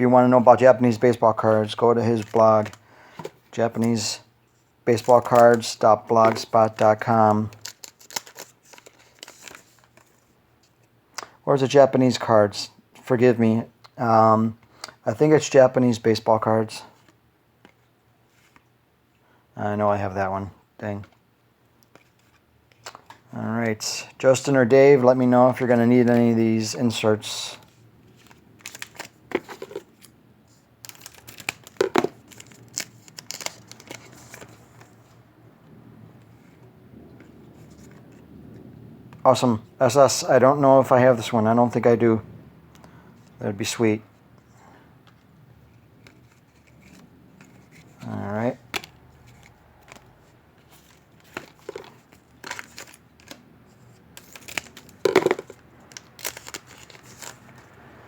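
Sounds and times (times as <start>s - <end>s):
cards being handled: 0.5s - 11.4s, 21.8s - 24.5s, 25.5s - 35.2s, 45.1s - 57.9s
wrapper crinkling and tearing: 4.9s - 10.2s, 28.1s - 30.1s, 30.8s - 34.6s, 48.7s - 57.7s.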